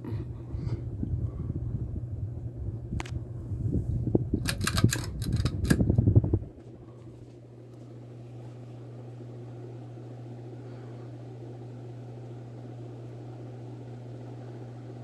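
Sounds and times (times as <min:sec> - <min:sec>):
ceiling fan motor hum: 0:00.0 - 0:15.0
sharp clicks: 0:04.4 - 0:06.0.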